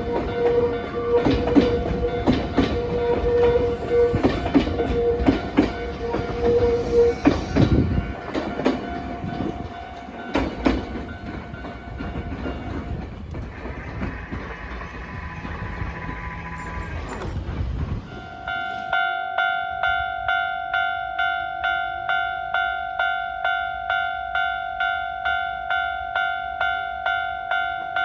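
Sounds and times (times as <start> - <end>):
train wheels clacking over rail joints: 0.0 - 18.3
steady train tone: 0.0 - 28.0.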